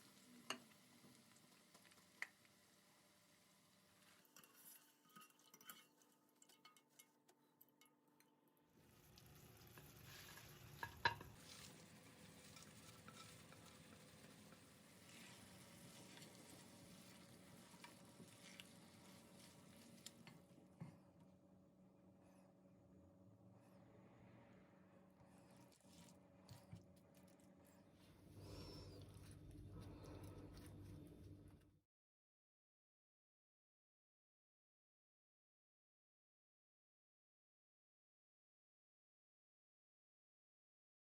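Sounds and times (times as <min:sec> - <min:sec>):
food sizzling in a pan: 0:00.0 - 0:05.8, 0:08.8 - 0:20.5.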